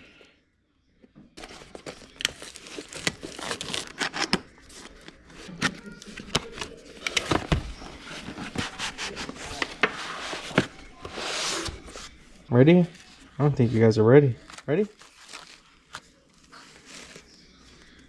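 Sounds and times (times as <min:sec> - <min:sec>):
packaging crinkling: 0:01.4 - 0:09.7, 0:14.3 - 0:18.0.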